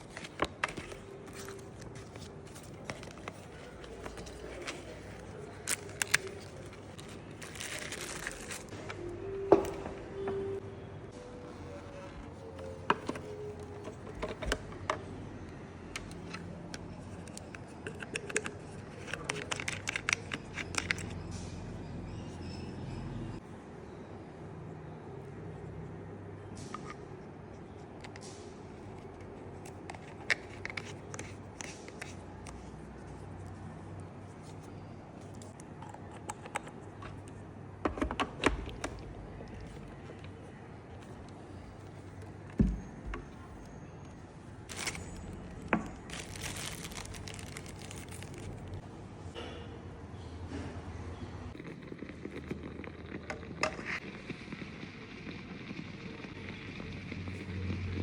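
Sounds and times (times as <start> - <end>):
small hard objects clicking: 44.7 - 48.8.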